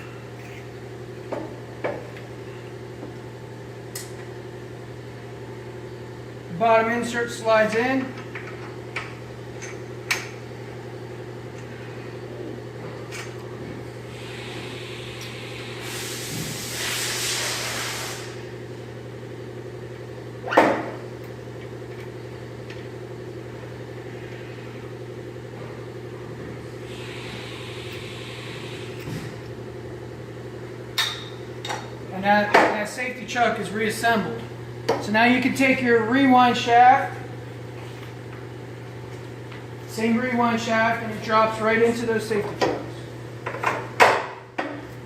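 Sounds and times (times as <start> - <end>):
machine hum: 0.0 - 45.0
hiss: 14.1 - 18.5, 26.8 - 29.2.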